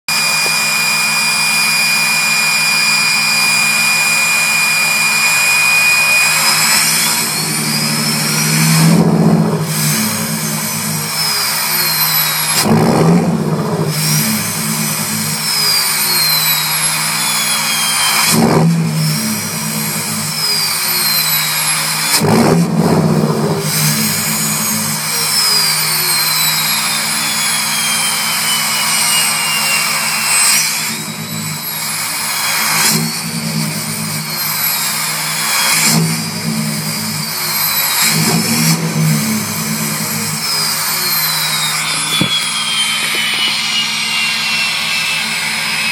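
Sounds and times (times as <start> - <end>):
diesel engine revving: 0.0 - 45.9
high turbo whistle: 0.1 - 45.9.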